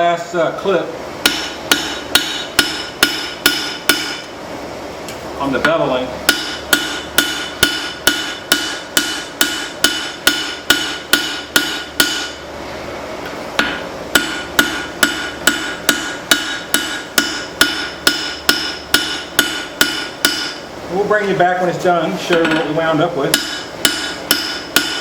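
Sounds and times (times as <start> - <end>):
hammer striking steel on anvil: 1.2 - 4.3, 5.6 - 12.4, 13.6 - 20.6, 23.3 - 25.0.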